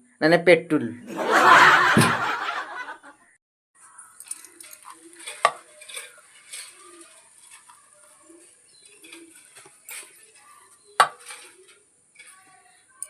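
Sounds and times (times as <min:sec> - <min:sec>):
kitchen utensils clinking and scraping: 0:01.1 - 0:03.0, 0:04.2 - 0:13.0
sharp knock: 0:01.8 - 0:02.4.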